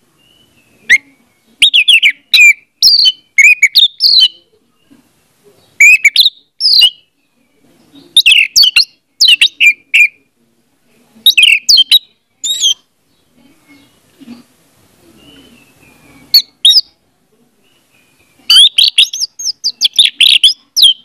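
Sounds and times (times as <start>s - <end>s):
thrush singing whistled phrases: 0.2s - 4.4s, 5.8s - 7.1s, 8.2s - 10.2s, 11.2s - 12.8s, 15.3s - 16.9s, 18.5s - 21.0s.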